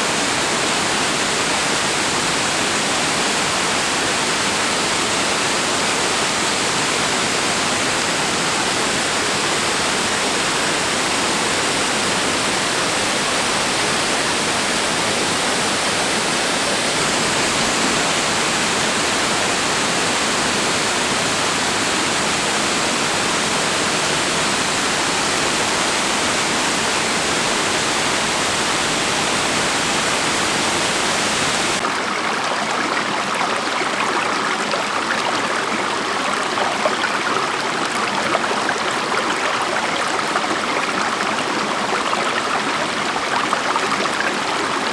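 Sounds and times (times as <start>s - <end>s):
waterfall rushing: 0.0s - 32.0s.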